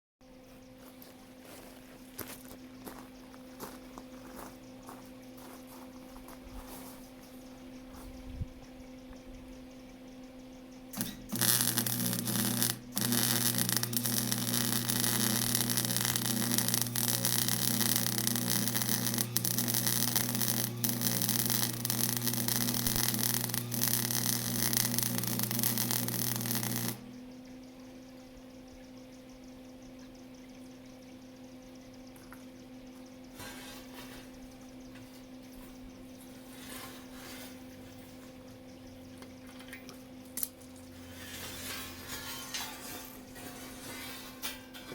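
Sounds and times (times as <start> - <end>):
arc welding hiss and buzz: 11.0 - 27.1
welding machine hum: 11.0 - 27.1.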